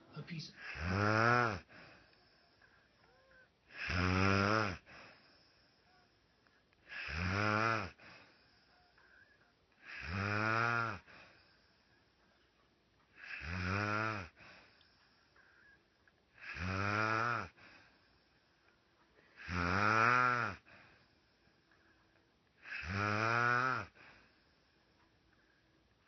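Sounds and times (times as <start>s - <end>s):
quiet breathing: 0.0s - 26.0s
woman snoring: 0.6s - 12.3s, 13.1s - 18.7s, 19.3s - 22.0s, 22.6s - 25.2s.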